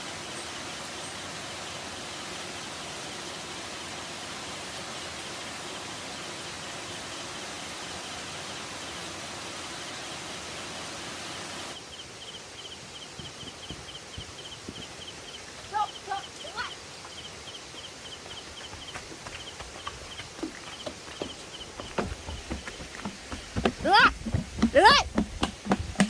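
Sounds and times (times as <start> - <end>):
rushing hiss: 0.0 - 26.0
high repeated chirping: 11.9 - 24.2
soft low thumps: 18.7 - 26.0.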